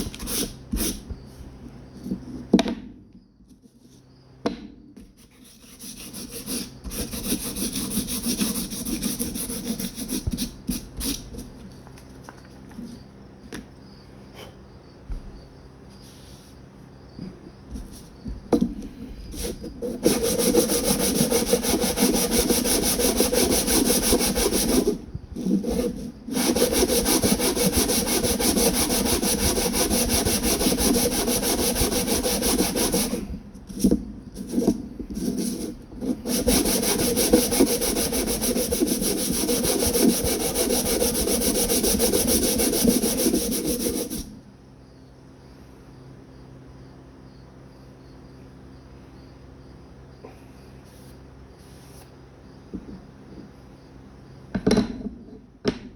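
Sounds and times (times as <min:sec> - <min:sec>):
sandpaper rubbing back and forth: 0:05.2 - 0:11.5, 0:19.4 - 0:44.3.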